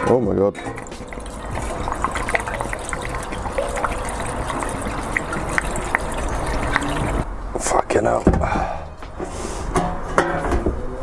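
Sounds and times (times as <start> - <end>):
fuel trickling into tank: 0.6 - 7.3.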